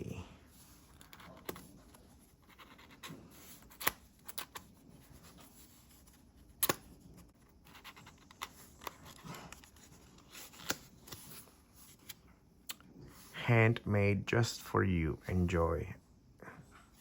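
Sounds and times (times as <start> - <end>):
paper and card rustling: 0.6 - 12.2.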